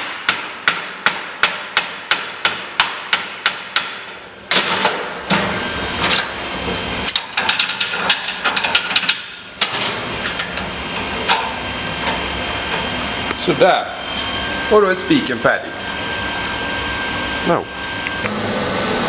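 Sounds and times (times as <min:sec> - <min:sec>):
steady machine noise: 0:05.2 - 0:19.0.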